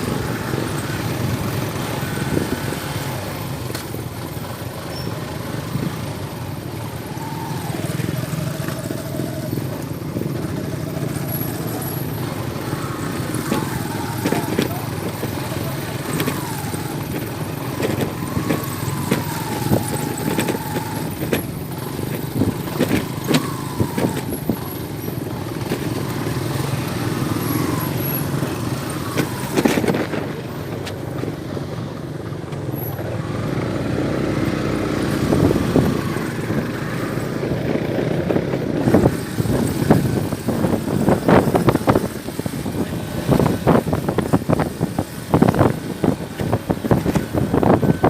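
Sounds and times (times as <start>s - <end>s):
vehicle engine rumbling: 0.0s - 48.0s
knocks and rattles: 12.8s - 24.9s.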